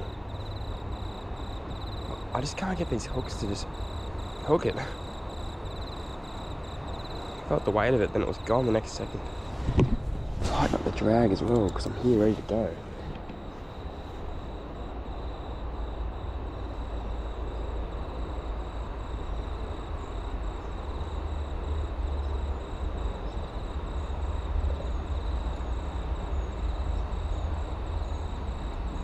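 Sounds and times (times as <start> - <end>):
low rumbling noise: 0.0 - 18.3
insects droning: 0.0 - 29.0.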